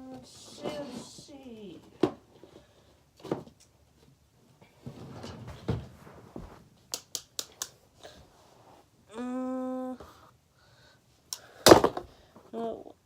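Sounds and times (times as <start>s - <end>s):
person humming: 9.1s - 10.2s.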